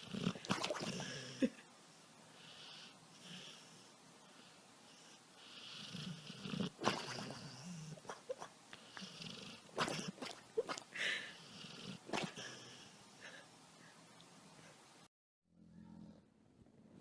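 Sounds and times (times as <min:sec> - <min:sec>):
dog snoring softly: 0:02.4 - 0:08.0, 0:08.8 - 0:09.7.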